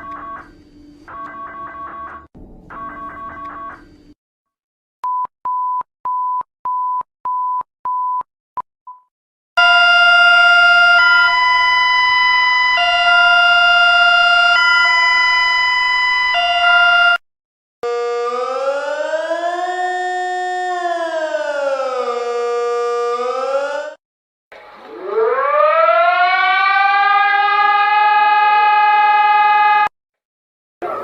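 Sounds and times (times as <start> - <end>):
siren rising in pitch: 9.6 - 17.2, 17.8 - 24.0, 24.7 - 29.9.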